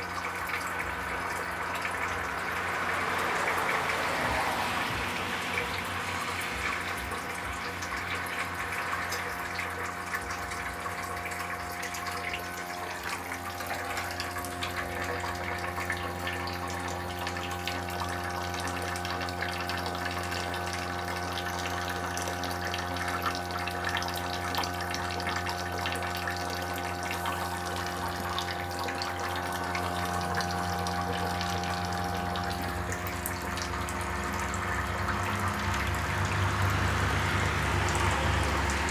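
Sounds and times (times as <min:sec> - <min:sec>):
compressor hum: 0:00.0 - 0:38.9
water-like rushing and hissing: 0:02.2 - 0:07.4.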